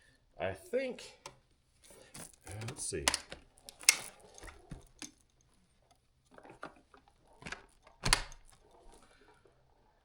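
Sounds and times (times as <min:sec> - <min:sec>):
hard plastic clicks and knocks: 0:02.5 - 0:05.2.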